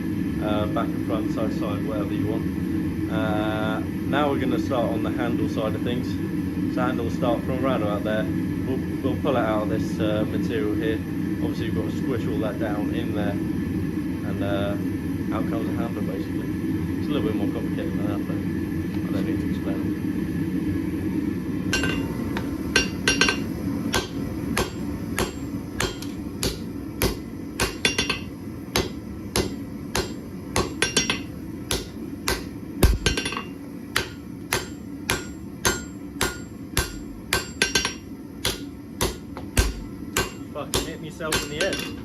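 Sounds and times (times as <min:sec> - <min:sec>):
hammer striking steel on anvil: 0:21.7 - 0:42.0.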